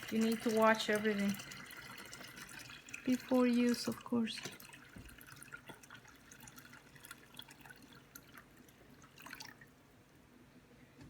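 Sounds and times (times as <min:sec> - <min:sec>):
water dripping into plastic bucket: 0:00.0 - 0:09.9.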